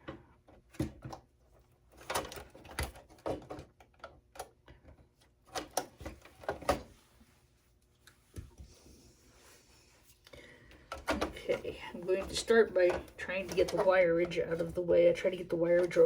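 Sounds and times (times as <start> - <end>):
computer parts knocking and clattering: 2.0 - 4.6, 10.9 - 14.8.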